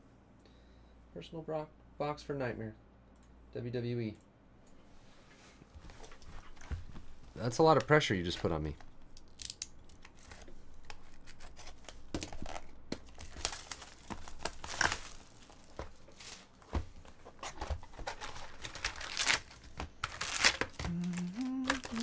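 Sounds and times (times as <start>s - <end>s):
packaging being torn and crinkled: 9.2s - 16.4s, 18.1s - 22.0s.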